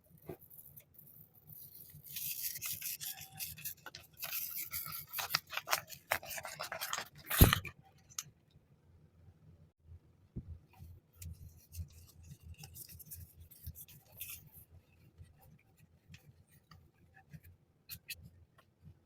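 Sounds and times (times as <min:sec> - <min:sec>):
packaging rustling: 0:02.5 - 0:08.2.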